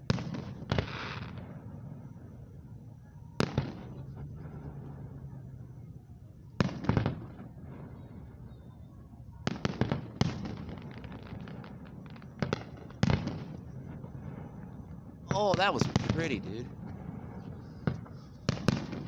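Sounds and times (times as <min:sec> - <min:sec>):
distant fireworks booming: 0:00.0 - 0:19.0
fireworks crackling: 0:15.3 - 0:19.0.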